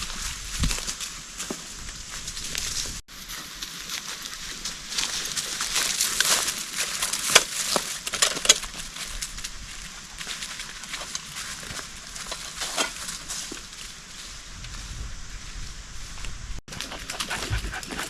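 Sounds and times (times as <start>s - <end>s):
dry wood cracking and snapping: 3.6s - 13.7s.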